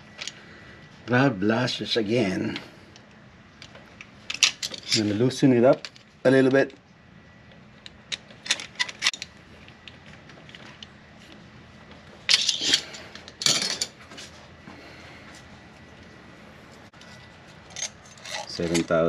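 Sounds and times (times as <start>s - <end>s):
metallic rattles: 4.2s - 6.1s
hand tools clinking on metal: 4.3s - 6.0s, 12.3s - 13.9s, 17.0s - 19.0s.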